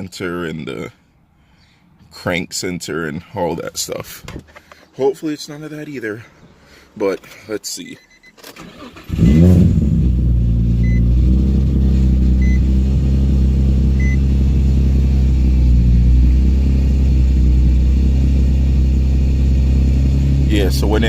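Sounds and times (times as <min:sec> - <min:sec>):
faint warning chime beeps: 0:08.0 - 0:08.4, 0:10.8 - 0:11.0, 0:14.0 - 0:14.2
car engine starting and idling: 0:08.1 - 0:21.0.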